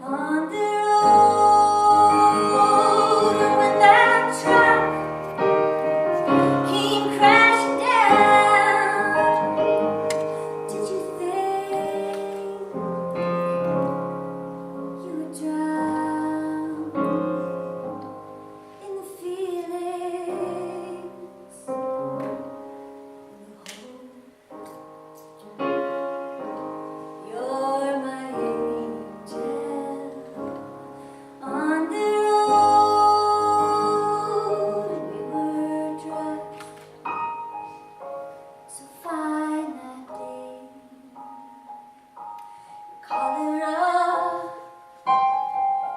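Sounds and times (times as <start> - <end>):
woman singing with vibrato: 0.0 - 5.1, 6.3 - 9.8, 10.4 - 13.1, 15.0 - 17.5, 18.8 - 21.7, 27.2 - 30.5, 31.4 - 36.6, 38.7 - 41.2, 43.0 - 44.8
piano accompaniment: 0.0 - 45.9.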